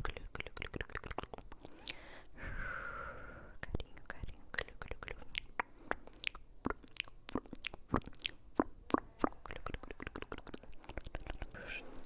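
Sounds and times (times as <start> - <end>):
short breathy sound: 1.7 - 3.6, 11.6 - 12.0.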